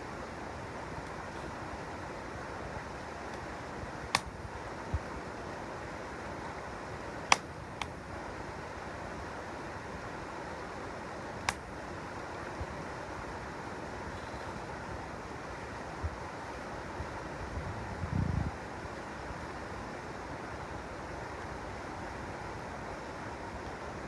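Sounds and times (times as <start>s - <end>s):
campfire crackling and popping: 3.2s - 4.6s, 7.2s - 8.0s, 11.4s - 11.8s.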